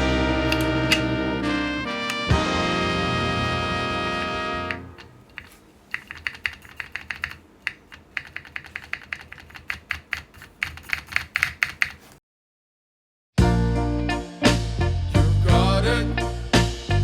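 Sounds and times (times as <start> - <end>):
mechanical keyboard typing: 0.5 - 1.0, 4.6 - 12.2.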